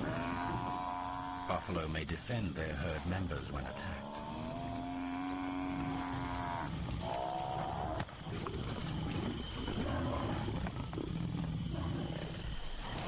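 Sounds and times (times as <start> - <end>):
buffalo bellowing: 3.6 - 13.0.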